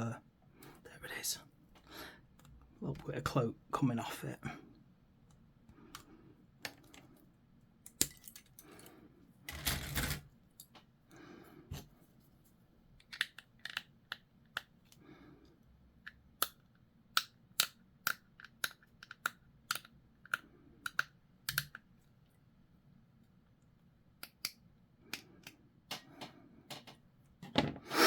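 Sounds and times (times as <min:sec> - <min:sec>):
sharp clicks and snips: 0:16.1 - 0:21.8.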